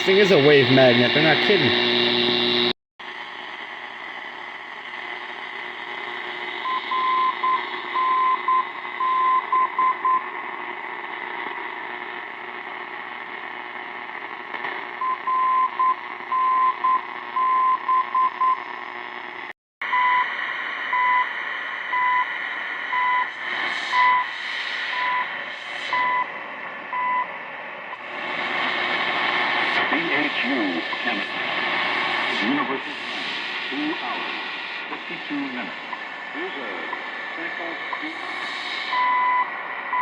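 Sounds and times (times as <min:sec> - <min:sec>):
shortwave radio static: 0:00.0 - 0:40.0
time signal pips: 0:06.6 - 0:10.2
morse code beeps: 0:23.0 - 0:23.3, 0:39.0 - 0:40.0.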